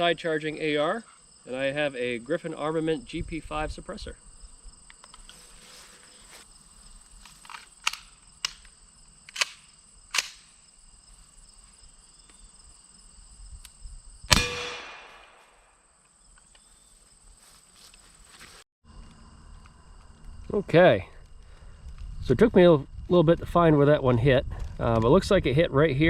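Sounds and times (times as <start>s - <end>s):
insects chirping: 0.0s - 26.0s
sharp clicks: 7.2s - 10.5s
suppressed gunshot: 14.3s - 15.7s.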